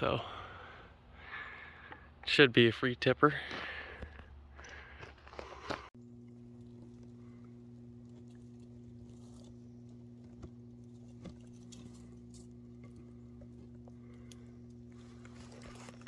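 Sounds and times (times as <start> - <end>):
faint low hum: 6.0 - 16.0.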